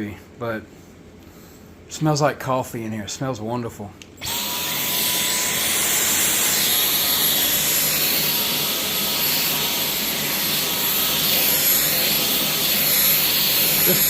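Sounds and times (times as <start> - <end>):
stick vacuum running with whine: 4.2 - 14.0.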